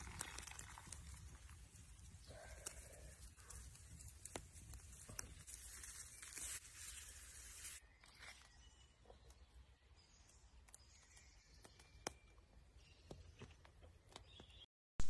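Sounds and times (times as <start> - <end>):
rustling handling noise: 4.0 - 8.4
rustling or tearing: 4.2 - 8.6.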